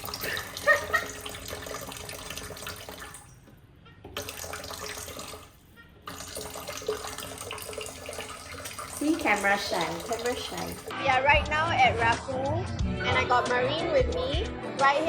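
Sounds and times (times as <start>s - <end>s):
tap water running into sink: 0.0s - 3.5s, 4.1s - 10.9s.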